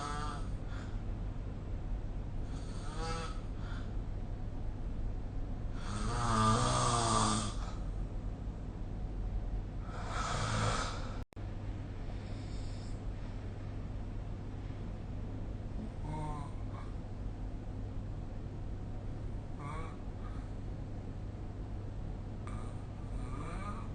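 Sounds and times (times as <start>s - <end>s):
person snoring: 0.0s - 0.9s, 2.5s - 3.9s, 5.8s - 7.8s, 9.8s - 11.2s, 15.8s - 16.9s, 19.6s - 20.4s, 22.4s - 23.9s
steady low hum: 0.0s - 23.9s.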